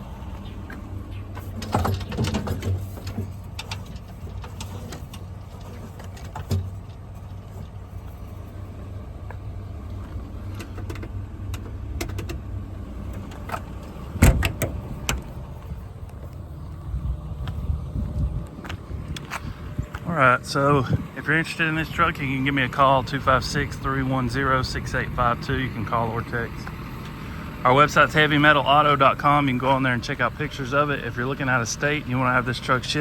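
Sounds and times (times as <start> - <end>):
truck engine idling: 0.0 - 33.0
clicks and clunks: 0.3 - 7.8, 9.2 - 12.5, 13.1 - 16.5.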